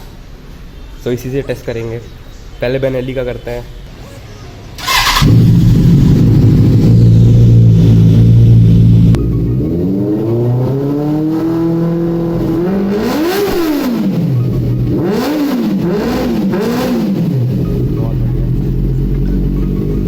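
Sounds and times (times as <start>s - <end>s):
motorcycle engine revving: 4.8s - 20.0s.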